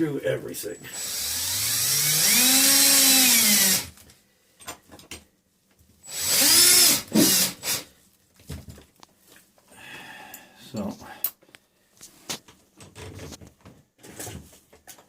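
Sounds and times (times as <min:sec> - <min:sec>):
power drill driving screw: 0:00.9 - 0:04.0, 0:06.0 - 0:07.9.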